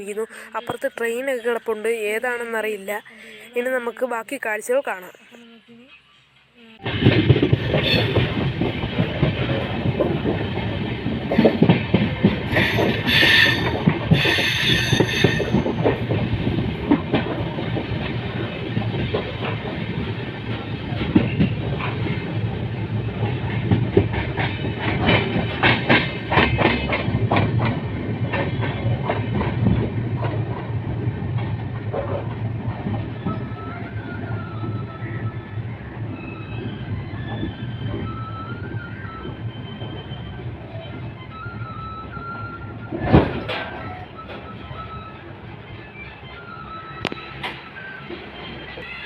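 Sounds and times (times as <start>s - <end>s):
train wheels clattering over rail joints: 6.9s - 34.9s, 41.1s - 45.0s.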